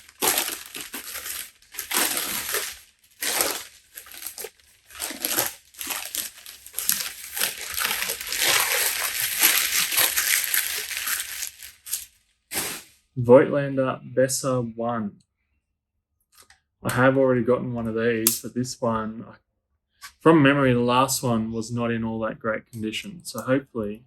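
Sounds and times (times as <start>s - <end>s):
newspaper crumpling and rustling: 0.0s - 13.0s.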